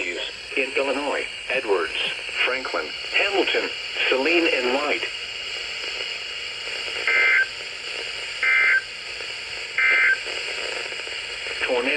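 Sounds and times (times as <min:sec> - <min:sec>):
steady hiss: 0:00.0 - 0:11.9
buzzy two-tone data bursts: 0:06.9 - 0:07.6.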